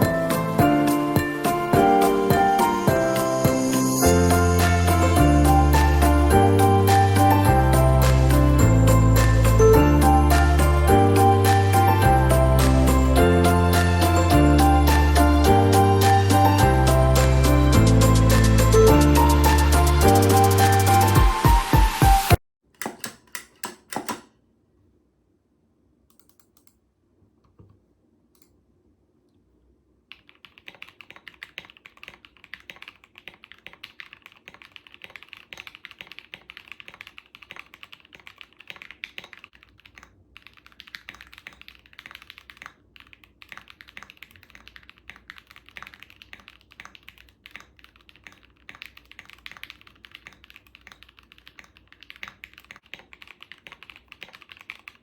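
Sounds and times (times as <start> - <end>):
mechanical keyboard typing: 30.1 - 55.0.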